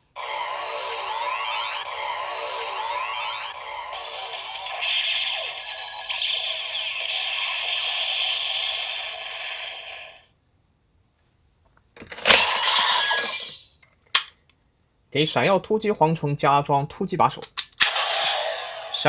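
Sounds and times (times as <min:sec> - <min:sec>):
toy electronic music and effects: 0:00.1 - 0:10.2, 0:17.9 - 0:19.0
plastic toy clack: 0:14.1 - 0:14.4.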